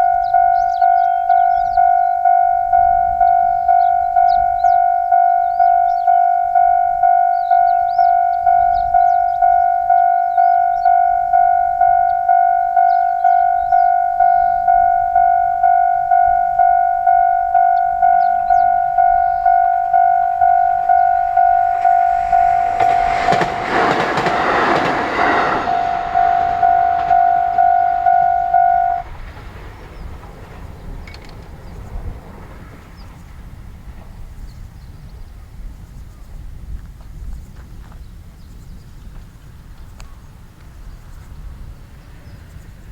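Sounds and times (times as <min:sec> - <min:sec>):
level crossing alarm bell: 0:00.0 - 0:29.1
train rushing past: 0:00.0 - 0:34.7
wheels clacking over rail joints: 0:16.4 - 0:34.2.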